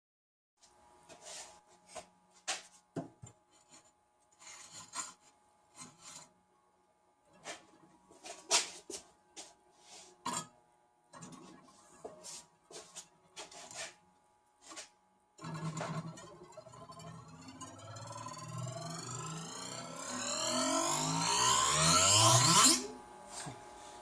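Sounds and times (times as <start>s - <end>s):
steel wire scraping across ledge: 14.6s - 23.0s.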